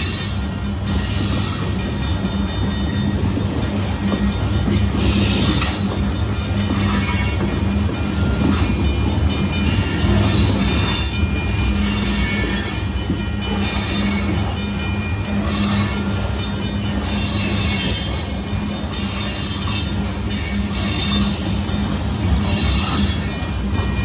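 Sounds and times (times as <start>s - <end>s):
freight train wheels rumbling: 0.0s - 24.0s
metallic squeal and clatter: 4.7s - 14.6s, 16.9s - 24.0s.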